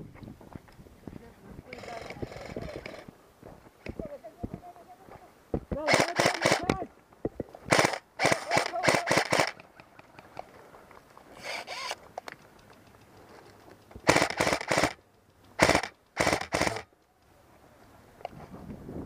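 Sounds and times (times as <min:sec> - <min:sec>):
airsoft guns firing bursts: 0:05.8 - 0:06.8, 0:07.7 - 0:09.6, 0:14.0 - 0:15.0, 0:15.6 - 0:16.9.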